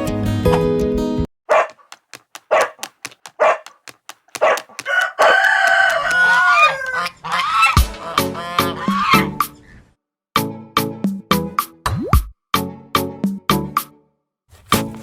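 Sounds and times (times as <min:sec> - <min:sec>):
rooster crowing: 0:04.4 - 0:09.3
chickens clucking: 0:04.4 - 0:09.7.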